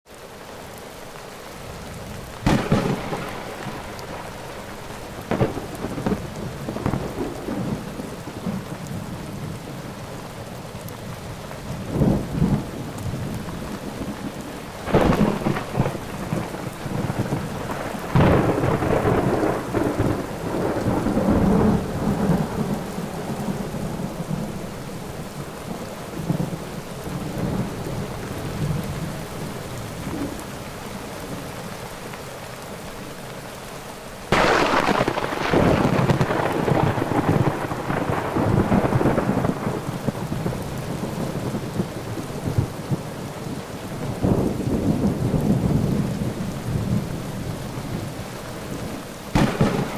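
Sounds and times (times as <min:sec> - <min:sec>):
steady rain: 0:00.1 - 0:49.9
thunderclaps rolling into rumble: 0:02.3 - 0:09.5, 0:11.8 - 0:24.7, 0:34.3 - 0:43.1, 0:49.3 - 0:49.9.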